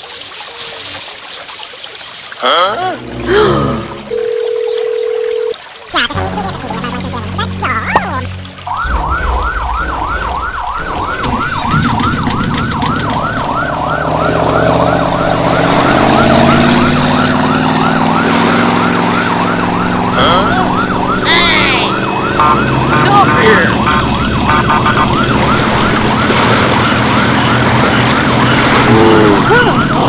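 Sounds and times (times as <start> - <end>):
low motor hum: 6.2 - 30.0
electronic yelp siren: 7.7 - 30.0.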